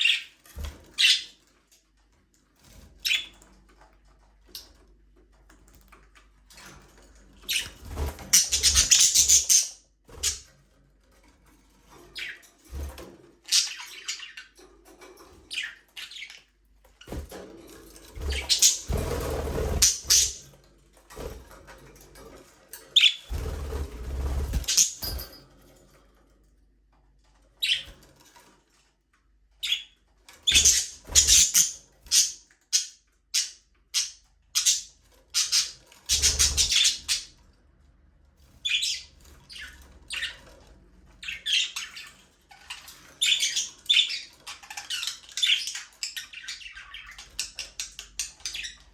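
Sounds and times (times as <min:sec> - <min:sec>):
budgerigars chirping: 0:03.1 - 0:03.3, 0:08.4 - 0:10.4, 0:18.3 - 0:19.1, 0:19.8 - 0:20.4.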